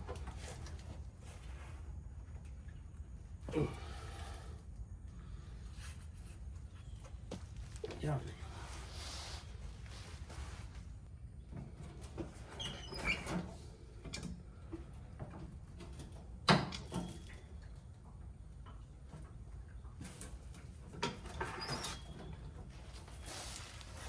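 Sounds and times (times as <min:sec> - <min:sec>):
brief squeaks: 0:12.5 - 0:13.6, 0:21.4 - 0:22.4.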